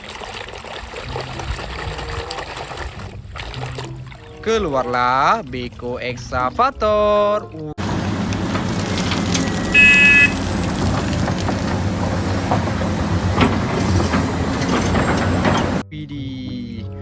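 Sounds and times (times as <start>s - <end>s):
heavy machine engine rumbling: 7.8s - 15.8s
short horn toot: 8.4s - 11.2s.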